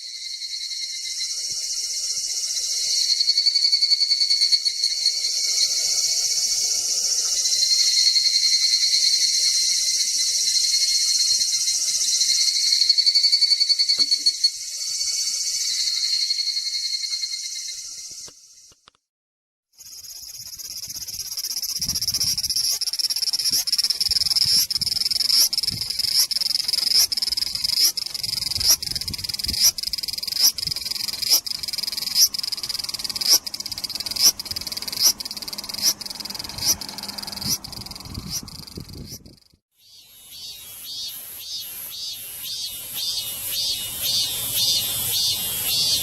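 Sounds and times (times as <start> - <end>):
cicada buzzing: 0.1 - 18.3, 19.8 - 46.0.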